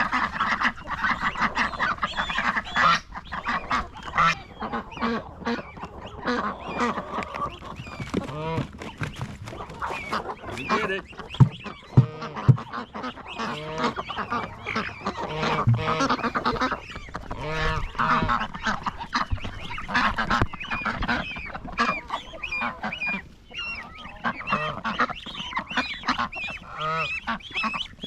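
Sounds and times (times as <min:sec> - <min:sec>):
goose honking: 0:00.0 - 0:07.6, 0:09.8 - 0:28.0
ducks and chickens calling: 0:00.0 - 0:28.0
sharp knocks: 0:11.4 - 0:12.7, 0:15.6 - 0:16.2.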